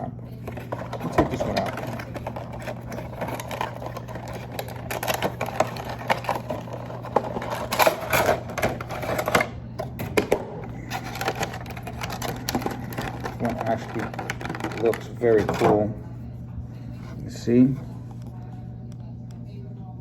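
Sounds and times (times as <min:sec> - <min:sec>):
steady low hum: 0:00.0 - 0:20.0
packaging being handled and opened: 0:00.4 - 0:09.5, 0:10.8 - 0:15.8.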